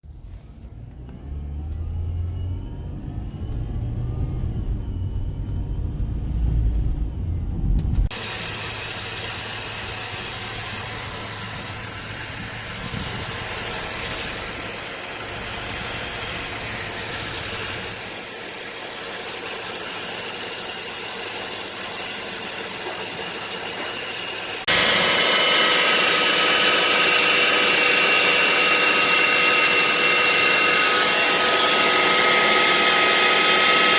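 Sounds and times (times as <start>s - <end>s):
car engine running: 0.1s - 18.0s
pulley bearing whine: 0.6s - 33.9s.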